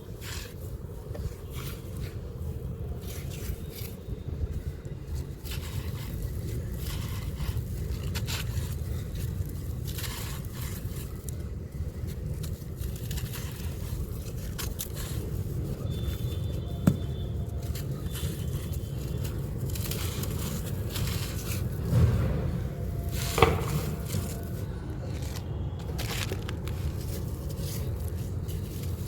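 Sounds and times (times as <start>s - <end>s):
steady low rumble: 0.0s - 29.0s
crunchy block being crushed: 5.2s - 22.2s, 22.8s - 29.0s.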